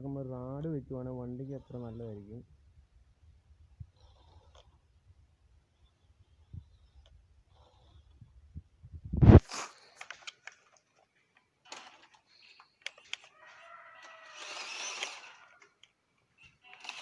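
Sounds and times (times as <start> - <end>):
toy truck clicks and knocks: 9.7 - 17.0
small electric motor whining: 11.7 - 17.0.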